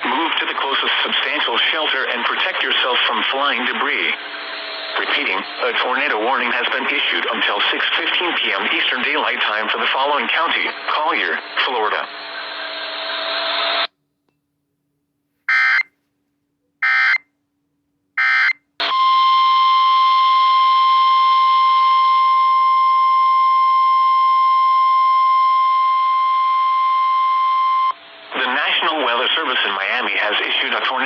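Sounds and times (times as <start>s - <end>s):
steady single-tone alarm: 15.5s - 15.9s, 16.8s - 17.2s, 18.2s - 28.2s.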